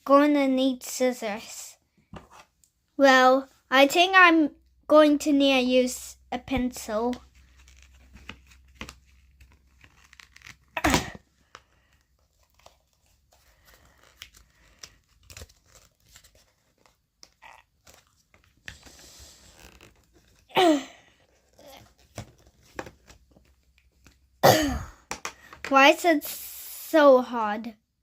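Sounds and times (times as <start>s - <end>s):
packaging tearing or crinkling: 7.4s - 11.1s, 13.5s - 18.2s.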